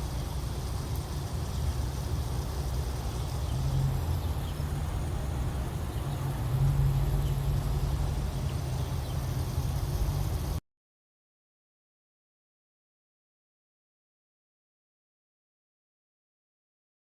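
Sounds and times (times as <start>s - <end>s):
low steady rumble: 0.0s - 10.6s.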